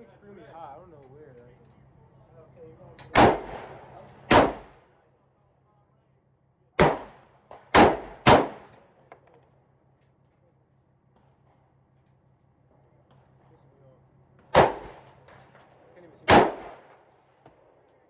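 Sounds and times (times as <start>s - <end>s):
echoing gunshots: 3.1s - 4.8s, 6.8s - 8.8s, 14.5s - 17.2s.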